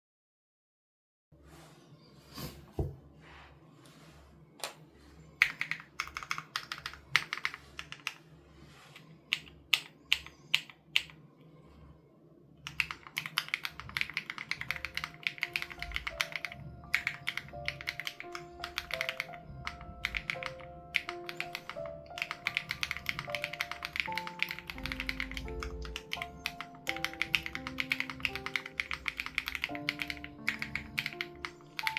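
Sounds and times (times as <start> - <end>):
soft background music: 1.4 - 31.9
mechanical keyboard typing: 5.4 - 8.3, 9.3 - 11.2, 12.6 - 31.9.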